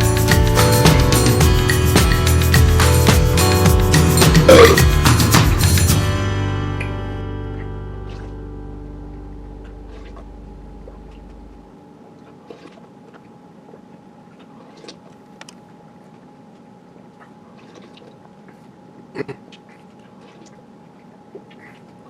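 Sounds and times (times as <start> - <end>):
acoustic guitar music: 0.0 - 12.0
faint steady hum: 6.5 - 22.0.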